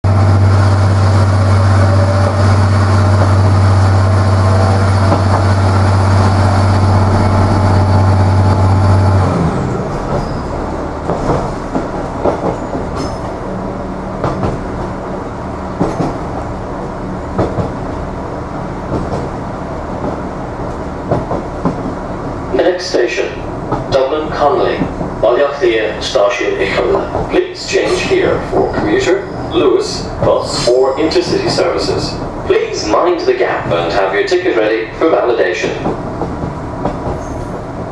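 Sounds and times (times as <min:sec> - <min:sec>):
train engine humming: 0:00.0 - 0:37.9
wheels clicking over rail joints: 0:09.9 - 0:13.6.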